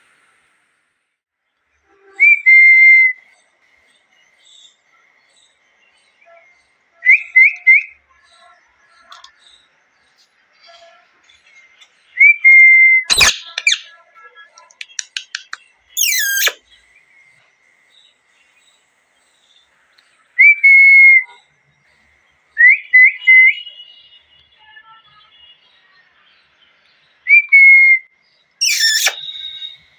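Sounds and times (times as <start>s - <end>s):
parrot screeching: 13.1s - 13.8s, 16.0s - 16.6s, 28.6s - 29.4s
parrot whistling calls: 13.1s - 13.8s, 16.0s - 16.6s, 28.6s - 29.6s.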